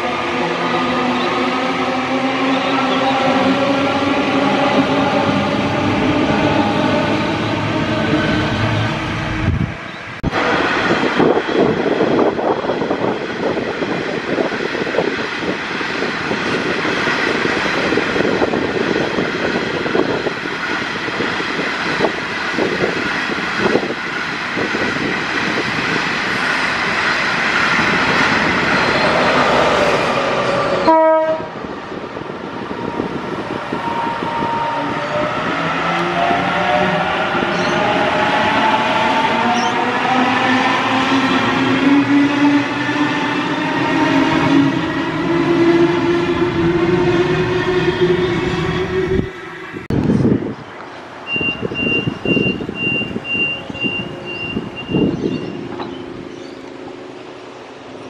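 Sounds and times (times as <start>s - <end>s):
train wheels rolling on track: 0.0s - 58.0s
train horn: 30.8s - 31.6s.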